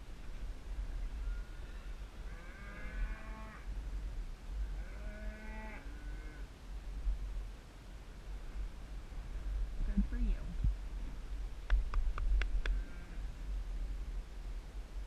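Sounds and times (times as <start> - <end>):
steady low rumble: 0.0 - 5.0, 5.8 - 15.0
cattle mooing: 1.8 - 3.6, 4.8 - 6.4, 12.7 - 13.2.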